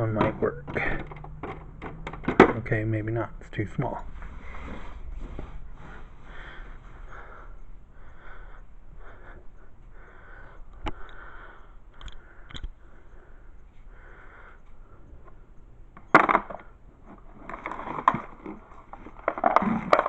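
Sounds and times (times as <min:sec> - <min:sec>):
soft breathing: 0:04.0 - 0:15.7.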